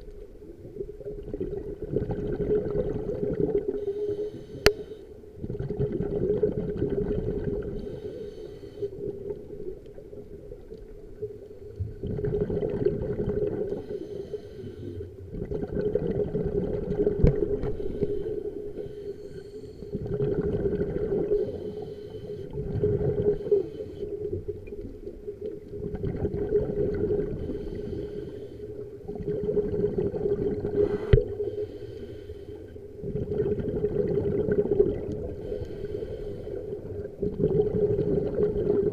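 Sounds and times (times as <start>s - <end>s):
diver breathing through regulator: 3.6s - 5.2s, 7.7s - 9.0s, 13.7s - 15.2s, 17.6s - 20.1s, 21.3s - 24.3s, 27.2s - 29.0s, 30.6s - 33.0s, 35.3s - 37.0s
bubbling exhalations: 12.0s - 13.8s, 19.9s - 21.4s, 29.0s - 31.3s, 33.0s - 35.4s, 36.8s - 38.9s.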